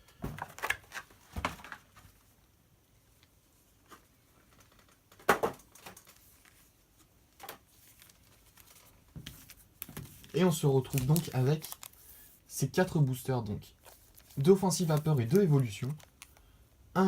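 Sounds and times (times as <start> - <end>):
card packs rustling: 0.2 - 2.2, 7.3 - 16.5.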